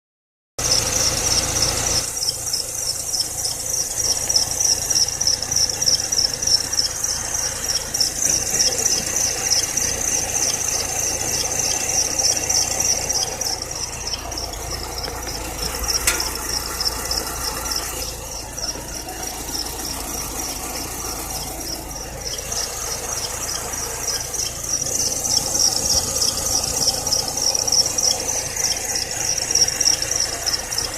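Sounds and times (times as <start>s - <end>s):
drive belt whistling: 0.6s - 30.9s
low engine hum: 0.6s - 30.9s.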